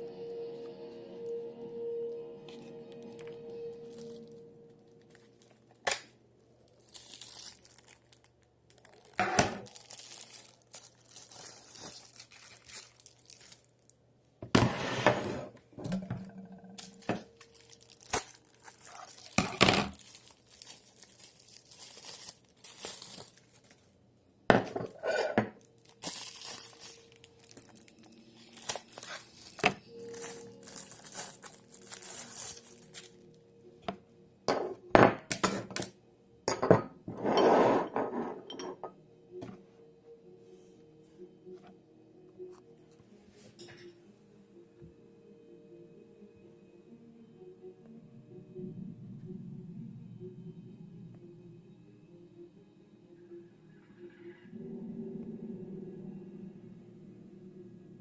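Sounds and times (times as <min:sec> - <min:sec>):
plastic sheath crinkling and rustling: 0:05.0 - 0:13.9, 0:16.8 - 0:23.9, 0:25.6 - 0:33.3.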